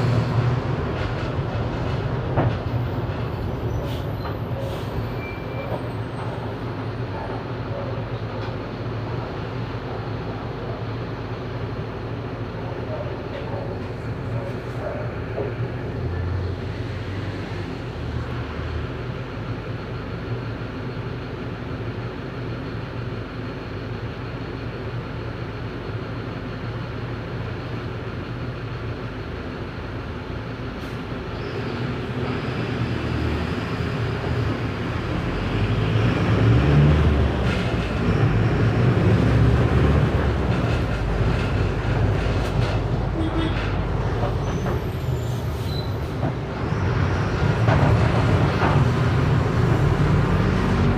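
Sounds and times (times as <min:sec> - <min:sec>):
bus diesel engine rumbling: 0:00.0 - 0:50.9
bus body rattle: 0:00.6 - 0:04.6, 0:39.5 - 0:45.2, 0:47.4 - 0:49.9.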